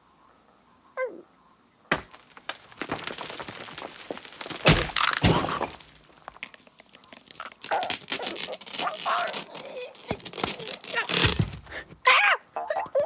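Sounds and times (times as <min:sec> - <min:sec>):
heavy thuds: 0:01.9 - 0:06.4
cartoon cracking: 0:01.9 - 0:11.8.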